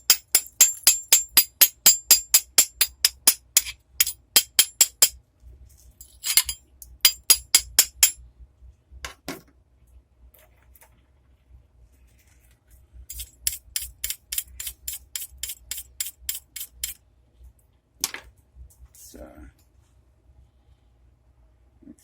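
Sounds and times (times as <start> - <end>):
hammer striking metal: 0.0 - 5.2, 6.3 - 8.2.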